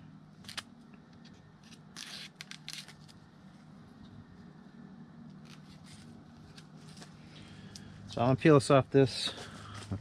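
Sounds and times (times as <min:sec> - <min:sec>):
tape tearing: 0:00.4 - 0:00.7, 0:01.6 - 0:03.2, 0:05.4 - 0:07.1.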